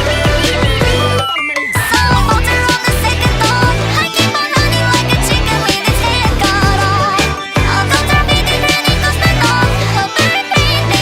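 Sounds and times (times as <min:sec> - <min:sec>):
electronic pop music: 0:01.2 - 0:10.3.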